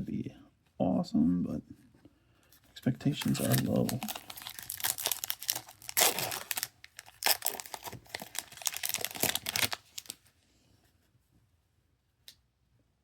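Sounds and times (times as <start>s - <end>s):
foil wrapper crinkling and tearing: 3.0s - 10.2s.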